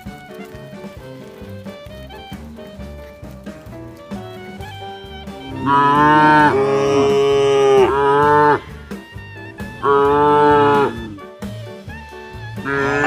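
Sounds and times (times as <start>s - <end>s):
background music: 0.0s - 13.0s
cow mooing loudly: 5.4s - 8.8s, 9.8s - 11.2s, 12.6s - 13.0s.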